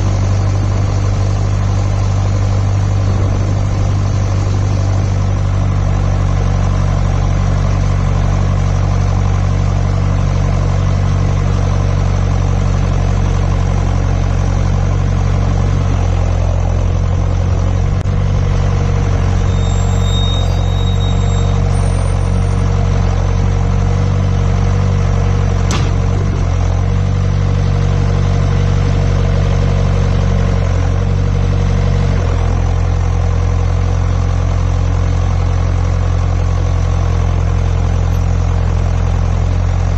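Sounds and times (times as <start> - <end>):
tractor diesel engine running: 0.0 - 39.9
sharp click: 25.7 - 26.2.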